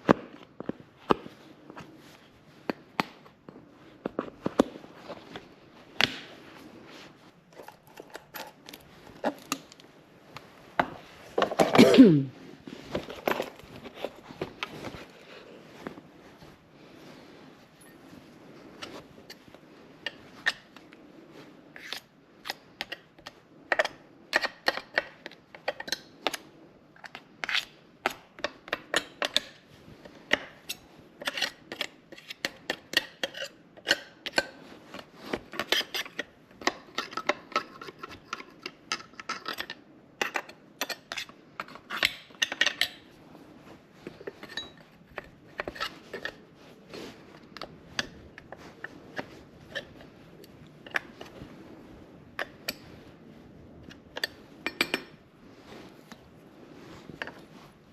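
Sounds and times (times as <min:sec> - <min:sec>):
metal tools clinking and scraping: 0:44.2 - 0:44.9.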